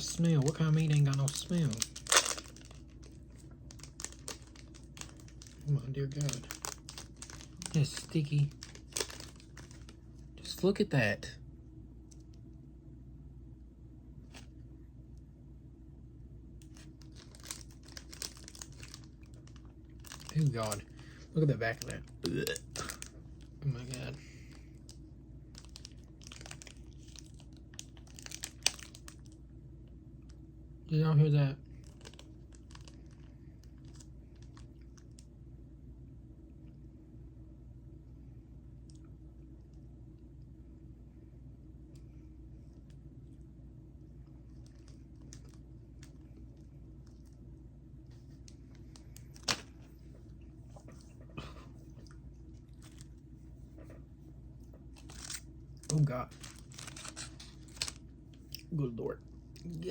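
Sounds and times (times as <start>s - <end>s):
plastic packaging crinkling: 0.0s - 10.1s, 16.6s - 29.4s, 31.7s - 35.2s, 44.6s - 46.2s, 48.2s - 54.0s, 54.8s - 58.7s
steady low hum: 0.0s - 59.9s.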